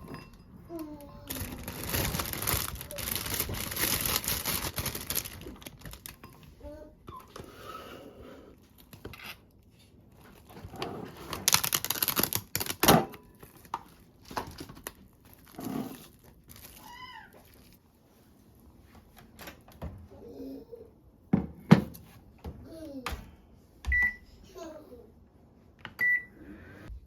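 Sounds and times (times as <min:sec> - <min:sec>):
packaging crinkling and tearing: 0:01.3 - 0:06.2, 0:11.3 - 0:17.8.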